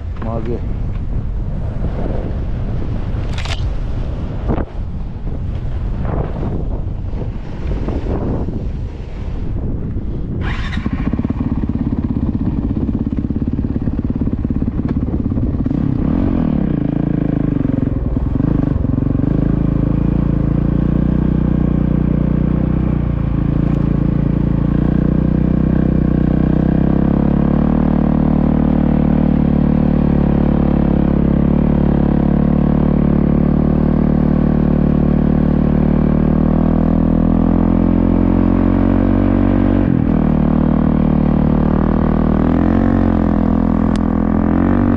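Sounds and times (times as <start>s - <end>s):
motorcycle engine running: 9.6s - 44.9s.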